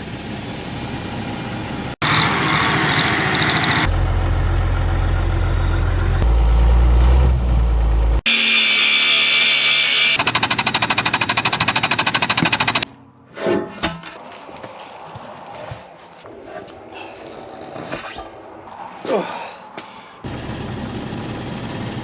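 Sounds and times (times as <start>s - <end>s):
deep steady machine running: 3.9s - 8.2s
bright high-pitched tool whine: 8.3s - 10.2s.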